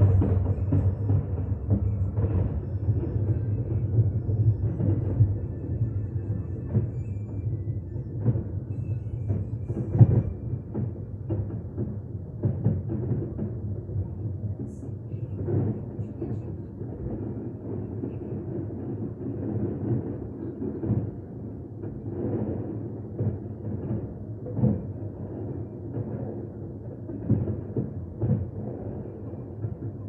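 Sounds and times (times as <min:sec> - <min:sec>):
continuous rumble: 0:00.0 - 0:20.9
fireworks booming: 0:00.0 - 0:26.4.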